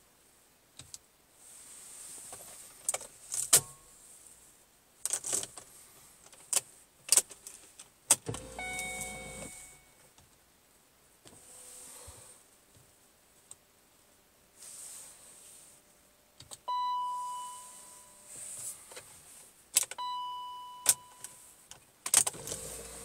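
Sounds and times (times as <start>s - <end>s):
bell-like warning chime: 8.4s - 10.0s, 16.7s - 18.4s.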